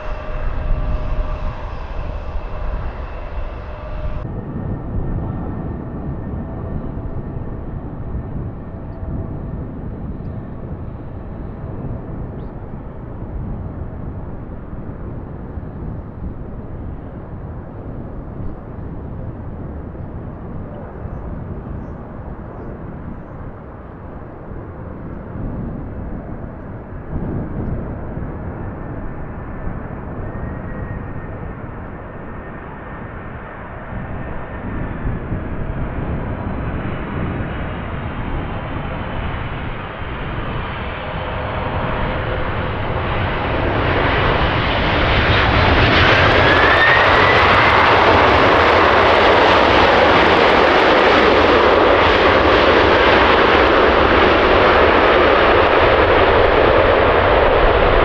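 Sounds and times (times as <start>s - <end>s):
high jet whine: 0.0s - 58.0s
jet engines of airliner: 0.0s - 58.0s
low rumble: 0.0s - 58.0s.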